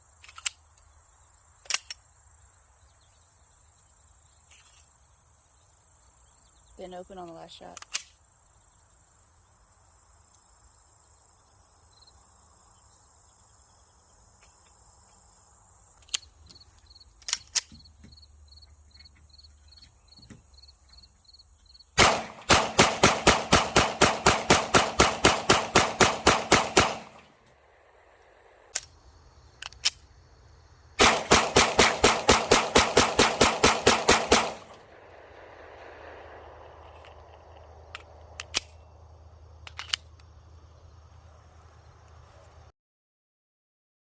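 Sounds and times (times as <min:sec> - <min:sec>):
gun handling clicks: 0:00.2 - 0:00.9, 0:01.6 - 0:02.1, 0:07.2 - 0:08.2, 0:16.0 - 0:16.4, 0:17.2 - 0:17.8, 0:28.7 - 0:28.9, 0:29.6 - 0:30.1, 0:36.8 - 0:38.8, 0:39.6 - 0:40.3
pistol shots: 0:22.0 - 0:27.3, 0:31.0 - 0:36.9.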